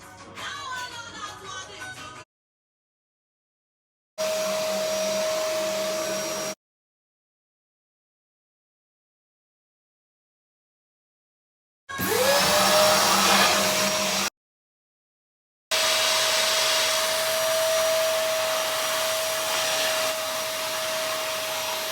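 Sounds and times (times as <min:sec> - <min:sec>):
vacuum cleaner motor running: 0:04.2 - 0:06.6, 0:11.9 - 0:14.3, 0:15.7 - 0:21.9.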